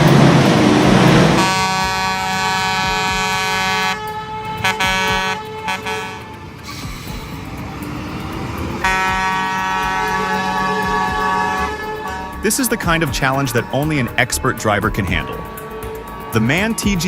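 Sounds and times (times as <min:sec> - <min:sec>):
vehicle engine: 0:00.0 - 0:17.0
vehicle air horn blowing: 0:01.4 - 0:12.5.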